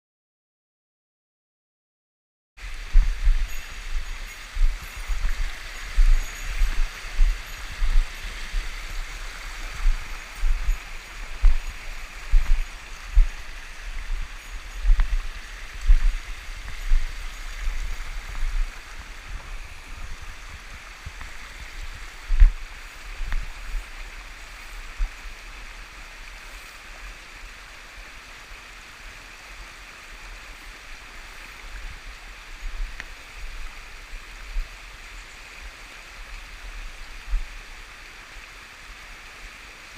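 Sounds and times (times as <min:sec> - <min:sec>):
stream rushing over rocks: 0:02.6 - 0:39.9
low thumps and bumps: 0:02.9 - 0:18.8.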